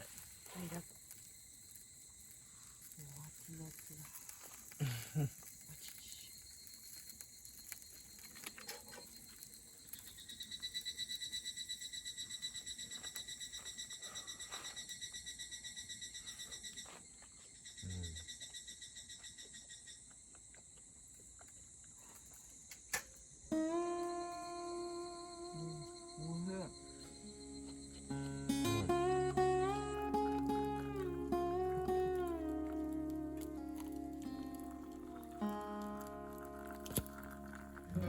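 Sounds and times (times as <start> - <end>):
insect chirping in rapid pulse: 0.0 - 38.0
insects trilling: 0.0 - 38.0.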